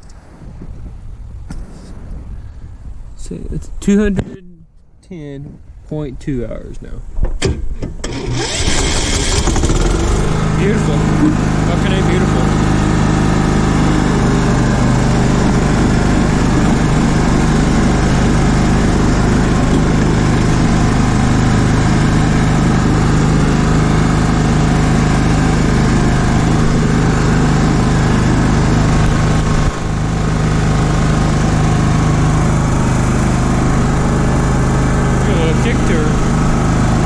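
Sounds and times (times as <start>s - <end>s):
riding mower engine running: 7.4s - 37.0s.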